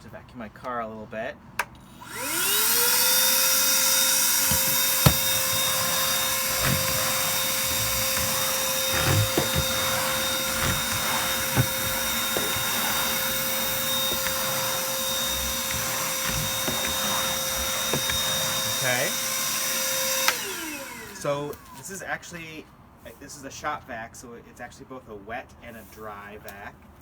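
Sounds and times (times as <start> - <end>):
shop vacuum motor whine: 1.8 - 21.9
sharp clicks and knocks: 4.4 - 18.8.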